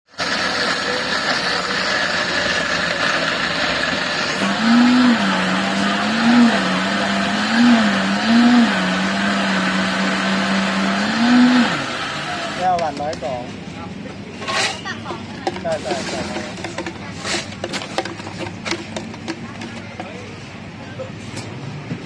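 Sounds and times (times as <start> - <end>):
electric blender running: 0.1 - 13.2.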